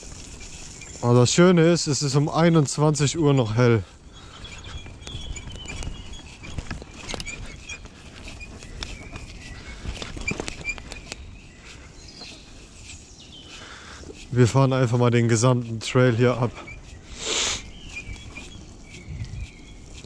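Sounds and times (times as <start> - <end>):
bicycle frame rattling and bumping: 0.0 - 13.0, 17.7 - 20.0
birds chirping: 0.0 - 20.0
tyres rumbling on trail: 0.0 - 20.0.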